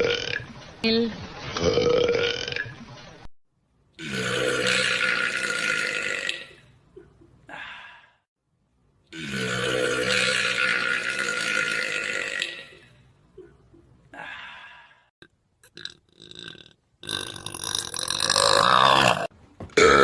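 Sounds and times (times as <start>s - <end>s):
men belching: 4.0s - 6.4s, 9.2s - 12.5s, 15.7s - 20.0s.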